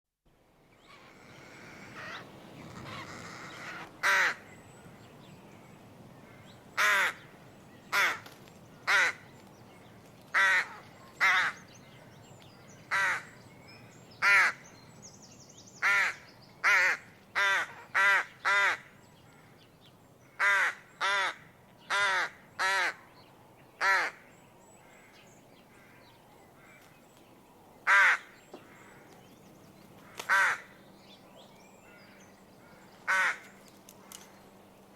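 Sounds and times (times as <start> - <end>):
rook cawing: 0.9 - 4.5, 6.2 - 7.3, 7.9 - 9.2, 10.3 - 11.7, 12.9 - 13.4, 14.2 - 14.6, 15.8 - 19.6, 20.2 - 23.0, 23.8 - 26.9, 27.8 - 29.1, 30.0 - 30.8, 31.8 - 34.3.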